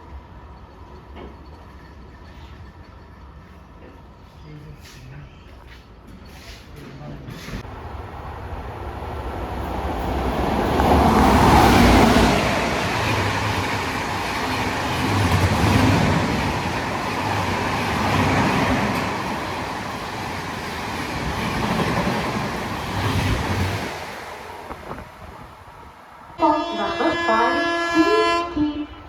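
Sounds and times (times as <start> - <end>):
train wheels rumbling past: 6.3 - 26.4.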